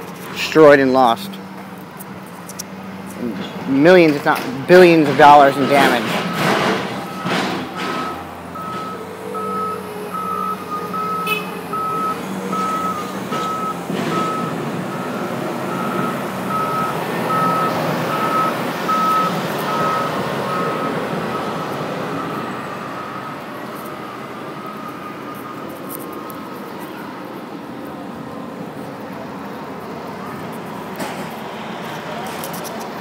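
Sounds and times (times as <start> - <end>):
heavy vehicle engine running: 0.0 - 33.0
vehicle backup alarm beeping: 5.7 - 25.8.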